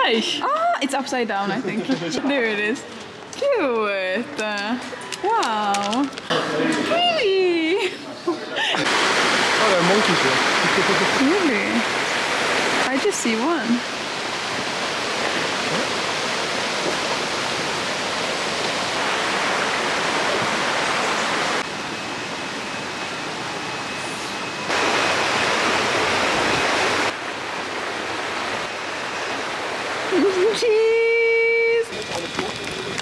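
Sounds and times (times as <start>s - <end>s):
waterfall rushing water: 8.8s - 21.6s, 24.7s - 30.2s.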